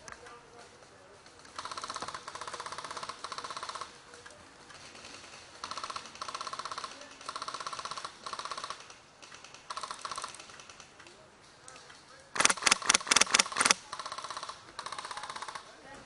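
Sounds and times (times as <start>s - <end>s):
airsoft rifle bursts: 12.3s - 15.6s.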